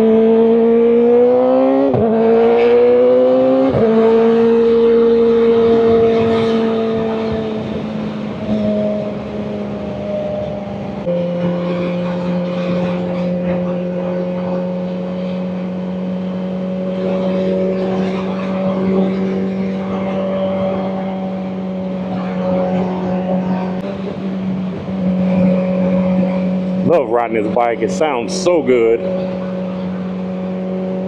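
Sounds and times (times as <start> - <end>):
motorcycle engine cruising: 0.0 - 31.0
wind rush: 3.6 - 11.1.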